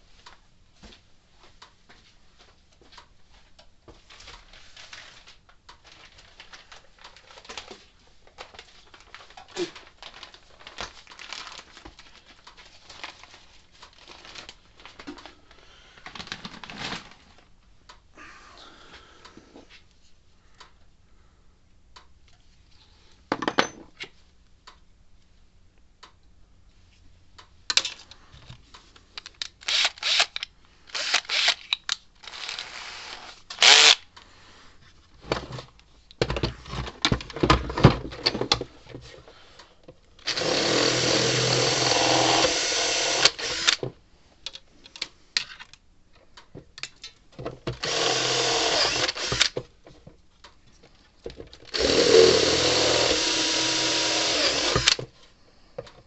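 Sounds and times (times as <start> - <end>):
electric drill running: 29.7 - 30.3, 31.0 - 31.6, 32.2 - 34.0, 40.2 - 43.8, 47.8 - 49.6, 51.7 - 55.0.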